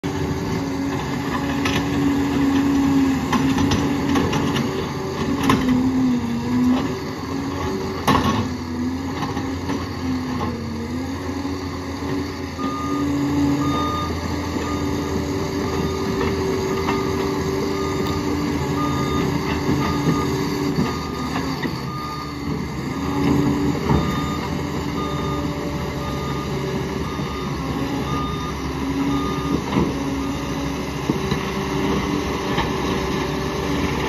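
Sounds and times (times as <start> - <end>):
dozer diesel engine running: 0.0 - 34.0
reversing alarm beeping: 0.4 - 34.0.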